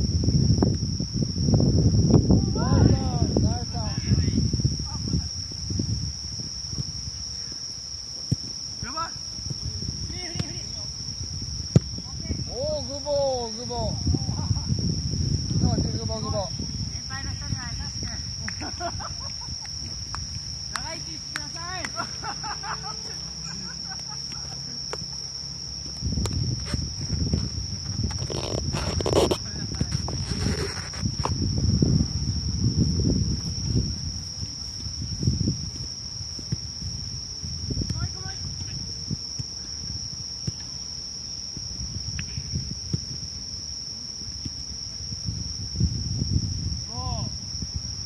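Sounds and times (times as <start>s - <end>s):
high-pitched insect trill: 0.0s - 48.0s
wind rumbling on microphone: 0.0s - 48.0s.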